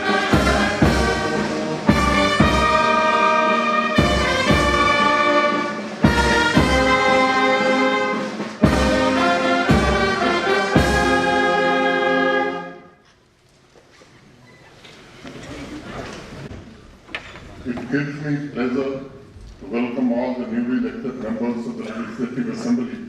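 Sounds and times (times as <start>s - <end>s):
brass band playing chords: 0.0s - 12.9s.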